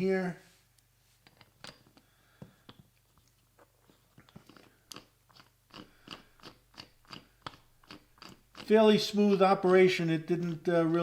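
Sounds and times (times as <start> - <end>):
small parts clicking and tapping: 1.2 - 3.4, 4.1 - 9.0.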